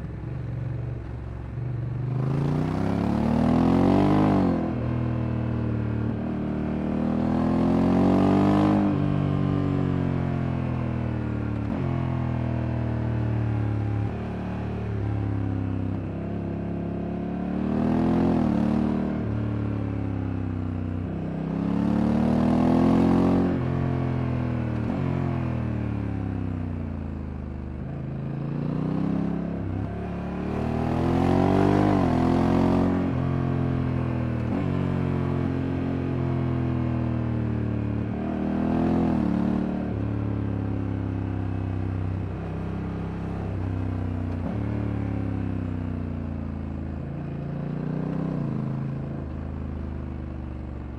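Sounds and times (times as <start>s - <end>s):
motorcycle engine accelerating: 28.6s - 50.9s.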